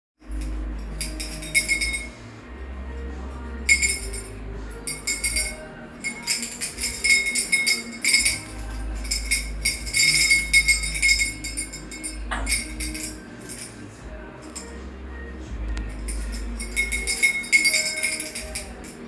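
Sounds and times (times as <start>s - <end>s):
metal cage bell jingling: 0.2s - 14.8s, 15.7s - 19.0s.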